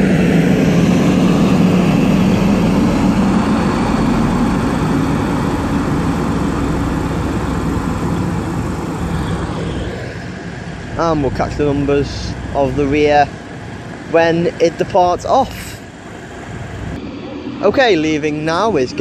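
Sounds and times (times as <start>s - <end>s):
diesel train engines droning: 0.0s - 19.0s.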